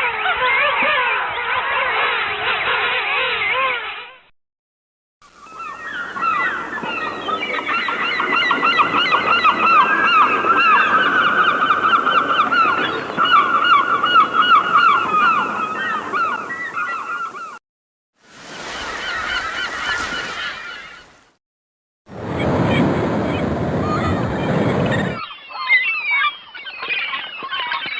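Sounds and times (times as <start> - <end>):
flock of birds calling: 0.0 - 4.2, 5.4 - 17.6, 18.5 - 21.2, 24.7 - 27.9.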